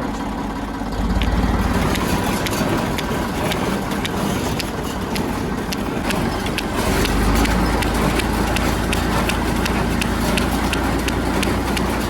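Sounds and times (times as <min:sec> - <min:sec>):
tractor diesel engine: 0:00.0 - 0:12.0.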